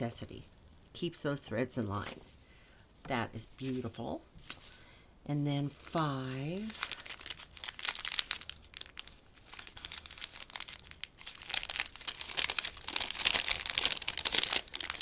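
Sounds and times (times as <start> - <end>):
gift wrapping crinkling and tearing: 5.8 - 15.0.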